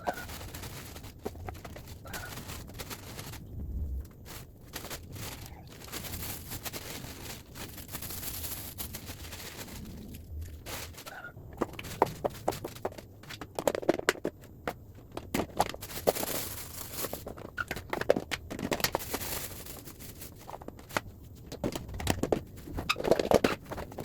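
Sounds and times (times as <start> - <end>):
packaging rustling: 0.0 - 24.0
containers clicking and knocking: 11.6 - 16.5, 17.1 - 19.2.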